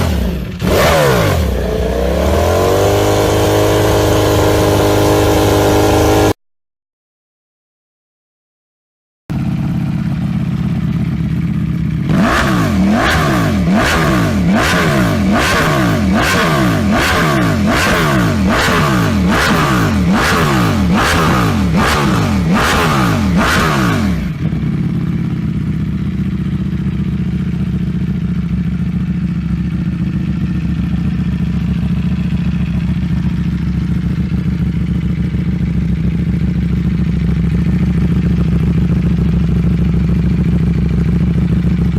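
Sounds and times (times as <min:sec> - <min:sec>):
motorcycle engine idling: 0:00.0 - 0:06.3, 0:09.3 - 0:41.9.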